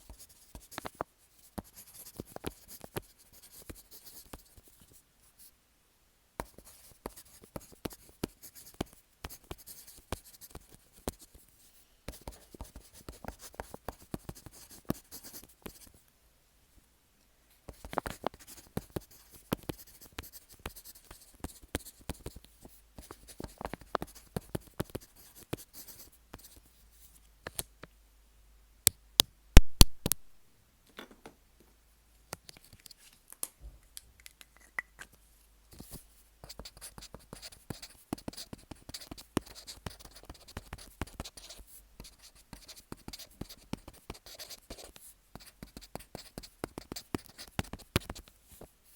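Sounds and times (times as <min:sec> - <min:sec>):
pen scratching on paper: 0:00.1 - 0:00.9, 0:01.5 - 0:04.7, 0:06.4 - 0:11.4, 0:12.1 - 0:15.9, 0:17.7 - 0:22.4, 0:23.0 - 0:26.6, 0:35.8 - 0:48.3.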